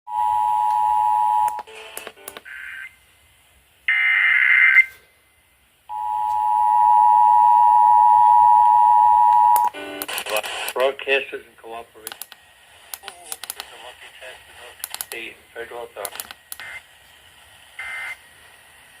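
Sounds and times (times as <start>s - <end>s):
two-tone attention signal: 5.9s - 9.9s.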